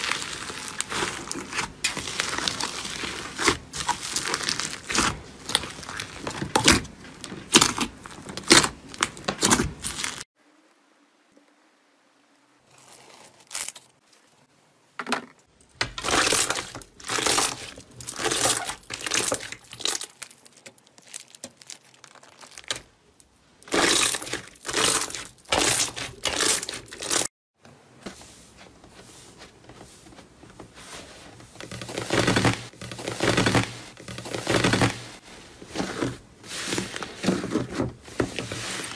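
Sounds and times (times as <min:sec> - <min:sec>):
slime crackling and popping: 0:00.0 - 0:10.2, 0:15.8 - 0:22.9, 0:23.6 - 0:27.3.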